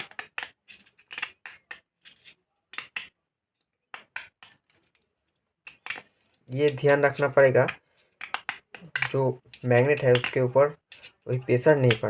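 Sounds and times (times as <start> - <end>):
metal tool scraping magnet: 5.7 - 12.0.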